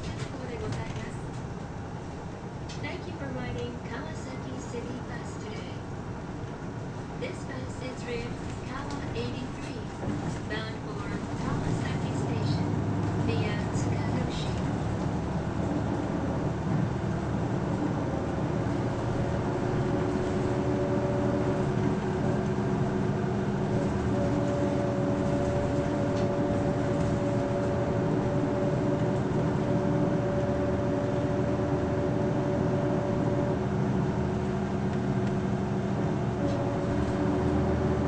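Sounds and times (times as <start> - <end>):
bus diesel engine rumble: 0.0 - 38.0
two-note whine: 23.7 - 33.6.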